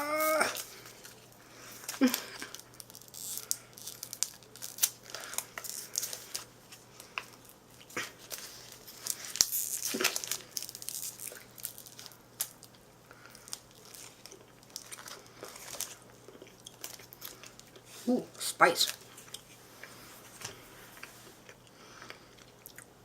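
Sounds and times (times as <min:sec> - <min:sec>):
plastic wrapper tearing and crinkling: 0:00.1 - 0:12.7, 0:13.3 - 0:16.0, 0:16.6 - 0:17.7.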